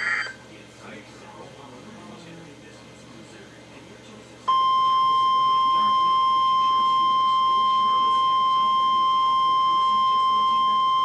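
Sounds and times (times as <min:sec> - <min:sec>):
steady warning alarm tone: 0:04.5 - 0:11.0.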